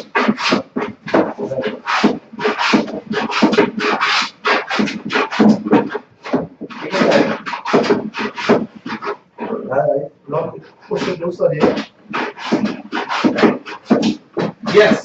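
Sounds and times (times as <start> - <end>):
hand tool scraping wood: 0.0 - 9.6, 10.6 - 15.0.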